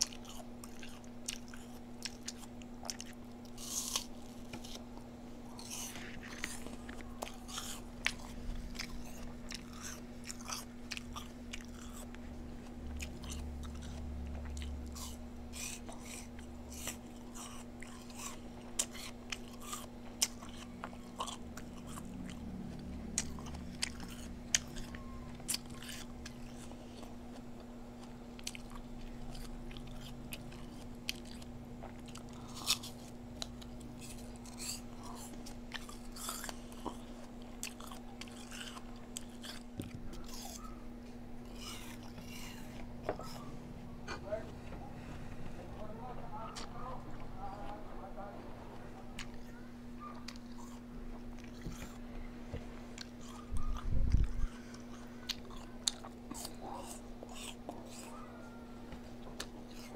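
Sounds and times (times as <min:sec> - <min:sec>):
crunchy food clicks: 0:00.0 - 0:40.8
person biting and chewing: 0:00.0 - 0:44.2, 0:49.1 - 0:52.0, 0:52.9 - 0:58.3, 0:59.2 - 0:59.9
steady low hum: 0:00.0 - 0:59.9.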